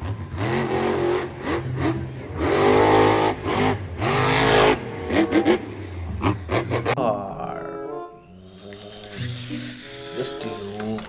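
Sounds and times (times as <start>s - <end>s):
car engine revving: 0.0s - 7.0s.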